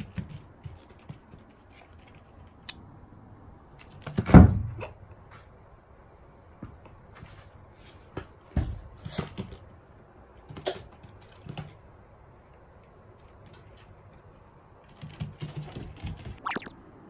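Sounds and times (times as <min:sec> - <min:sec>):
cats play-fighting: 0:00.0 - 0:02.7, 0:06.5 - 0:16.4.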